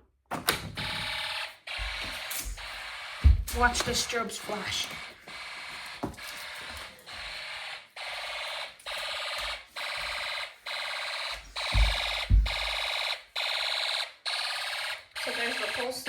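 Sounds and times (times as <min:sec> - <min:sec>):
low thumps: 0:11.6 - 0:12.8.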